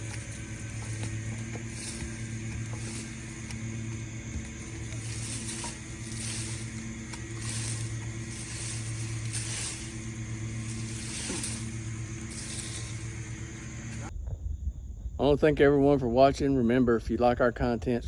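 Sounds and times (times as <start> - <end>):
engine idling: 0.0 - 14.1
pulsing hiss: 0.0 - 14.1.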